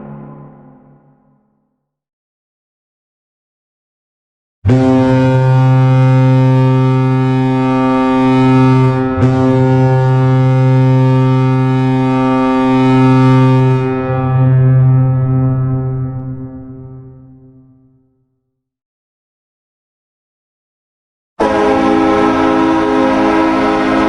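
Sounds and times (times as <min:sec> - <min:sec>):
hockey goal horn blast: 0:04.7 - 0:16.9, 0:21.4 - 0:24.0.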